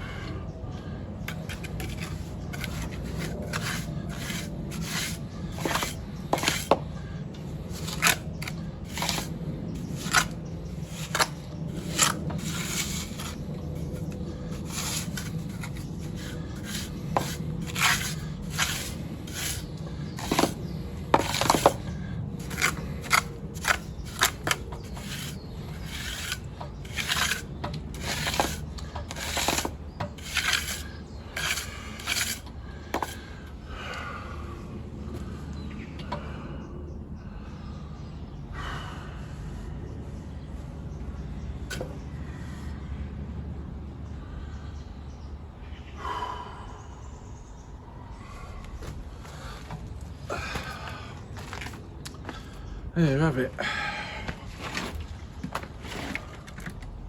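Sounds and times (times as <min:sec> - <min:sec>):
hand tool scraping rough surface: 0:01.3 - 0:06.8, 0:07.6 - 0:33.4, 0:54.5 - 0:56.8.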